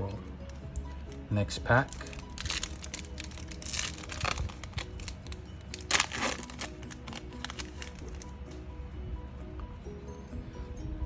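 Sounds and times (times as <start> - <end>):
background music: 0.0 - 11.0
foil pack crinkling and tearing: 1.8 - 8.3.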